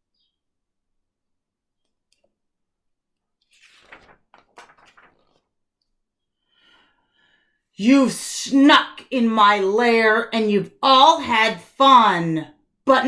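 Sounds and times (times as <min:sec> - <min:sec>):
book page turning: 0:03.4 - 0:05.6.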